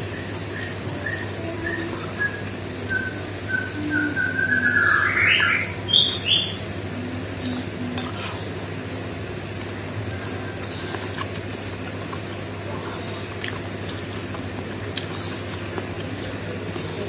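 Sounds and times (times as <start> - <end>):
bird calling high notes: 1.1 - 6.6.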